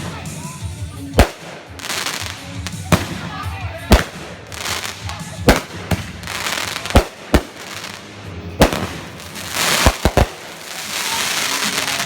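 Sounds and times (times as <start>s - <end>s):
fireworks crackling hiss: 0.0s - 12.0s
fireworks bangs: 1.2s - 12.0s.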